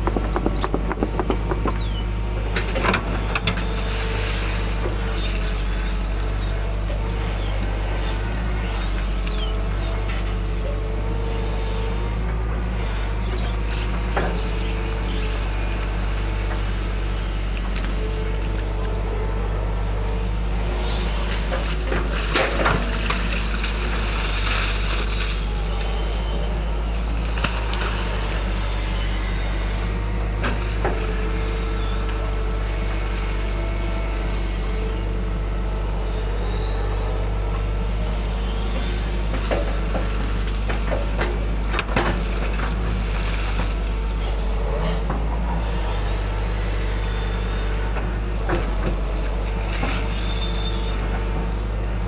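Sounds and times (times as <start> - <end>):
excavator bucket clattering: 0.0 - 3.6
excavator diesel engine running: 0.0 - 52.0.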